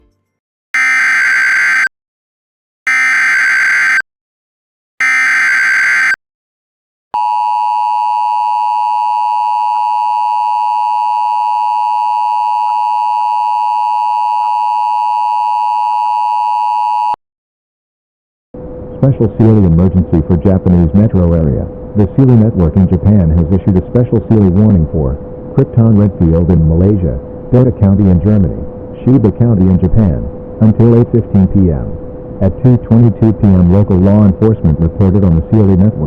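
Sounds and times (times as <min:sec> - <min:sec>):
buzzing data tone bursts: 0:00.8 - 0:01.9, 0:02.9 - 0:04.0, 0:05.0 - 0:06.2
two-tone attention signal: 0:00.8 - 0:01.9, 0:02.9 - 0:04.0, 0:05.0 - 0:06.2.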